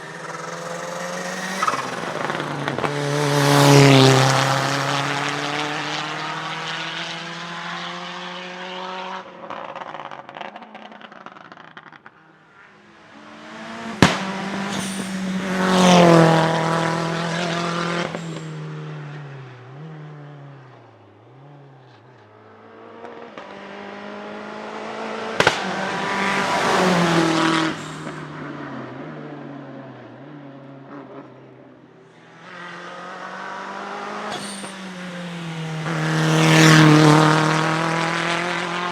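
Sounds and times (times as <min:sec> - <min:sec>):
race car engines revving past: 0:00.0 - 0:38.9.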